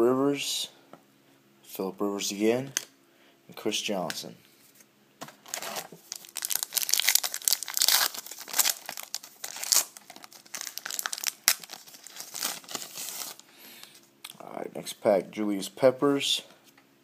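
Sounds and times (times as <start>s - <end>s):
wrapper tearing and crinkling: 5.4s - 13.4s.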